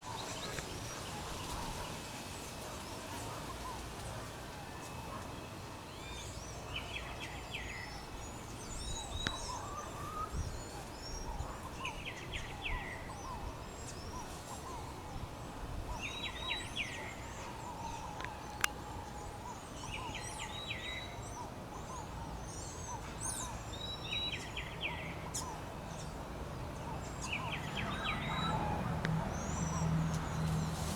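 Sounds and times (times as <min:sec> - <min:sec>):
birds chirping: 0:00.0 - 0:30.9.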